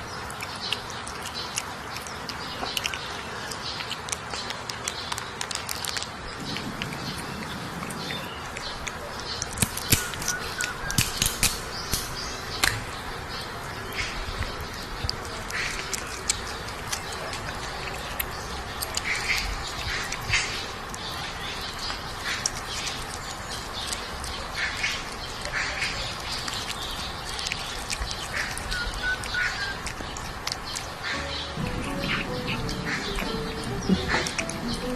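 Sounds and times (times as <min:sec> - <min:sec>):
animal squawking calls: 0:31.0 - 0:34.9.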